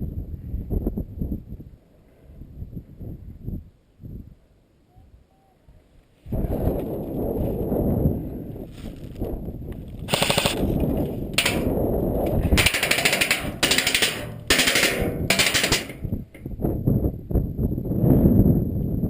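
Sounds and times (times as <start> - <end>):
wind rumble on microphone: 0.0 - 4.6, 5.7 - 12.7, 15.9 - 19.0
airsoft gun bursts: 10.1 - 10.8, 11.4 - 16.4.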